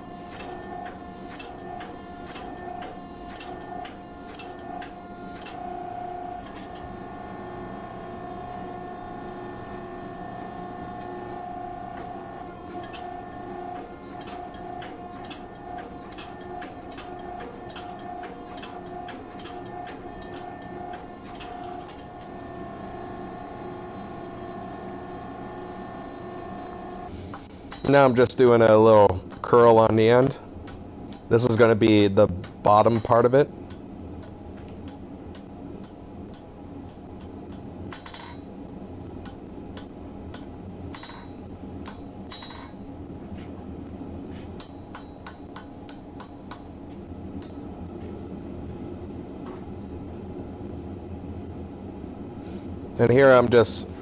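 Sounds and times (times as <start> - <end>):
machine whine: 0.0 - 28.4.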